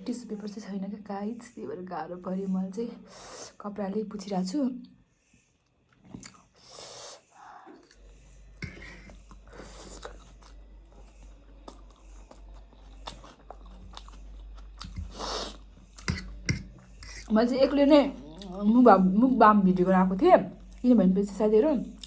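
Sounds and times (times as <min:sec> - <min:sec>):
low steady hum: 0:00.0 - 0:22.0
chewing and biting food: 0:09.2 - 0:16.4.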